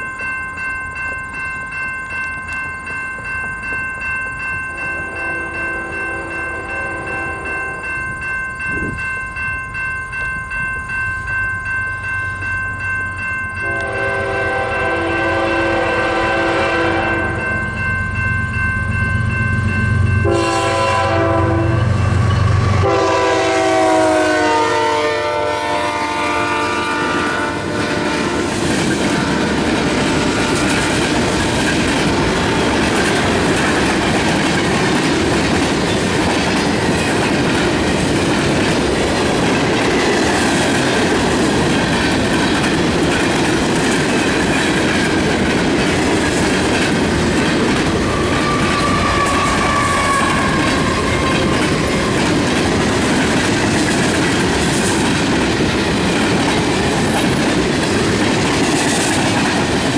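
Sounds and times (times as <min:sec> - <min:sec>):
freight train cars clattering: 0:00.0 - 0:59.9
locomotive horn blast: 0:13.6 - 0:17.5, 0:20.2 - 0:28.6, 0:48.1 - 0:51.8
high wheel squeal: 0:47.0 - 0:53.4.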